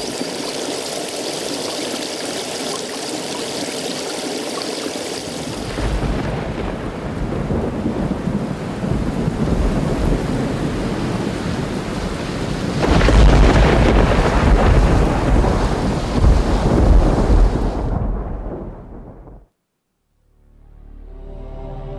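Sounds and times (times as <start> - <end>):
steady rain: 0.0 - 19.4
thunder rumbling: 5.4 - 19.5.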